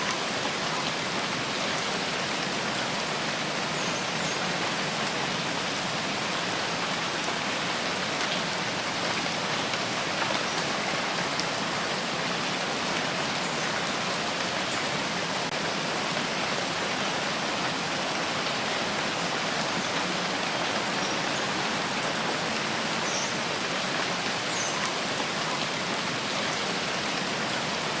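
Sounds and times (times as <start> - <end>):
steady rain falling: 0.0 - 28.0.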